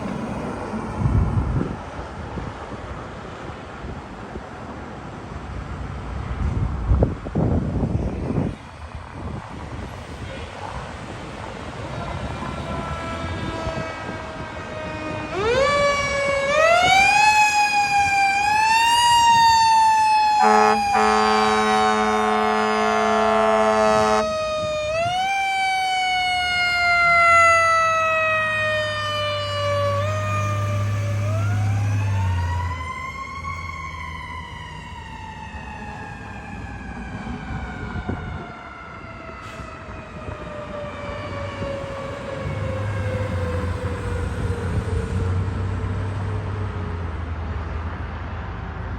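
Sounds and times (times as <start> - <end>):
fire siren wailing: 10.9 - 47.3
air horn blast: 12.0 - 15.2, 20.4 - 24.3.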